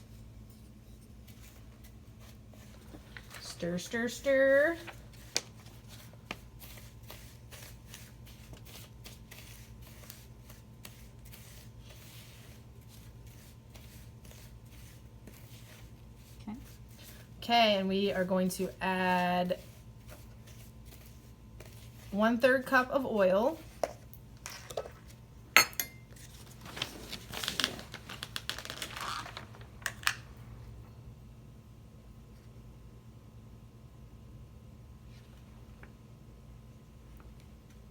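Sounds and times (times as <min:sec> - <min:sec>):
whisk scraping in a mixing bowl: 0:05.1 - 0:24.0
utensils and dishes clinking: 0:25.6 - 0:26.2.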